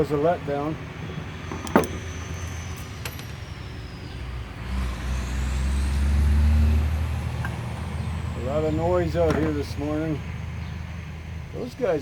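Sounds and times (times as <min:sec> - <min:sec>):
vehicle engine rumble: 0:00.0 - 0:12.0.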